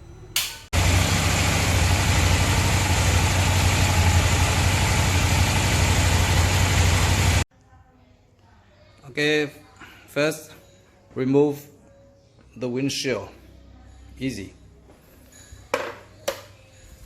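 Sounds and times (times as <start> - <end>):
motorcycle engine idling: 0.8 - 7.4.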